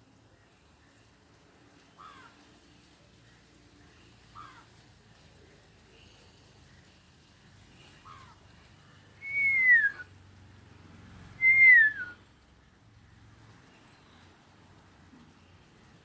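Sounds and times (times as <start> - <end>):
bird whistled calls sliding down: 9.2 - 10.0, 11.4 - 12.2.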